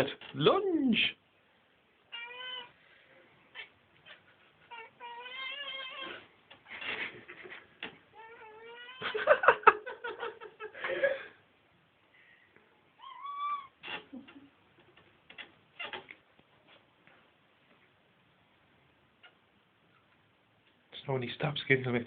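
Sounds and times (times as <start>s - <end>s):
cat warbling meows and chirps: 2.1s - 2.7s, 4.7s - 6.2s, 13.0s - 13.8s.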